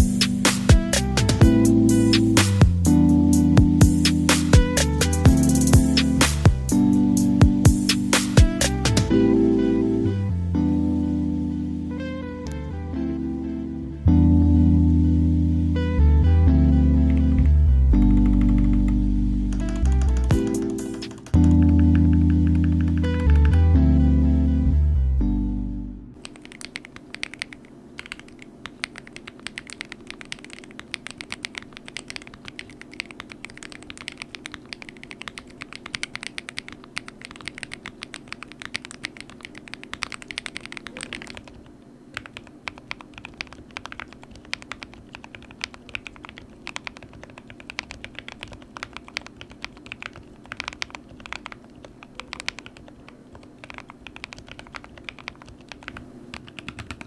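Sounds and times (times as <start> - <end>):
faint steady hum: 0.0 - 57.0
mechanical keyboard typing: 18.0 - 23.6, 26.2 - 57.0.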